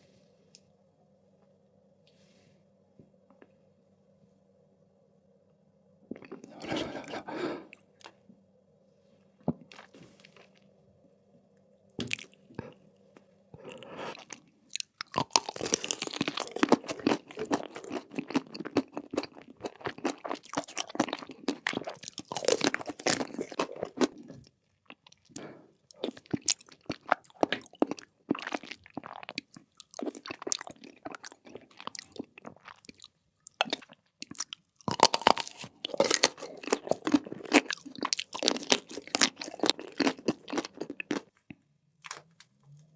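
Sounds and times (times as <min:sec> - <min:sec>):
faint hum: 0:00.0 - 0:26.4
crunchy food chewing: 0:09.5 - 0:10.7, 0:12.0 - 0:42.5.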